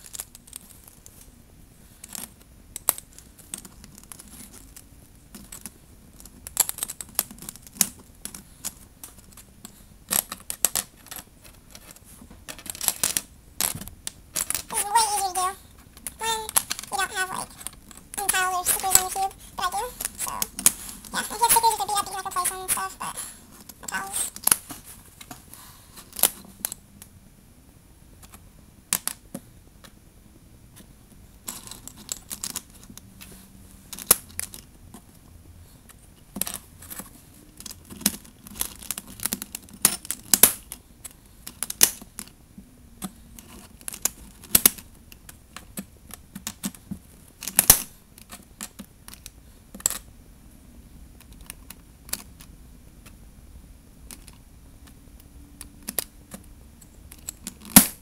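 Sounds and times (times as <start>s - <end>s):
plastic puzzle pieces clicking: 5.4s - 23.0s, 51.2s - 53.2s, 54.1s - 54.4s.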